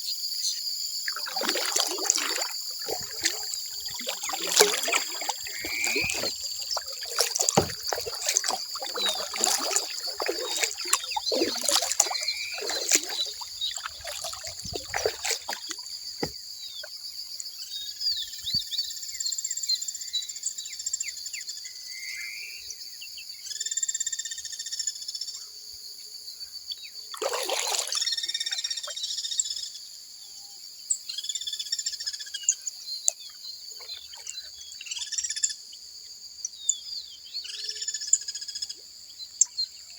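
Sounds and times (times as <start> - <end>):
paddle splashing in water: 1.0 - 16.4, 27.2 - 28.2
birds calling: 1.1 - 15.9.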